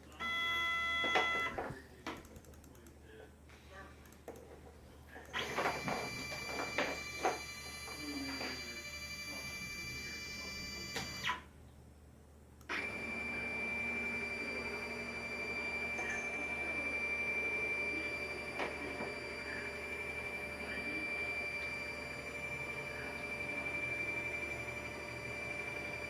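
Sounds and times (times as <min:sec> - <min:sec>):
router high-pitched whine: 0:05.4 - 0:11.4, 0:12.7 - 0:26.0.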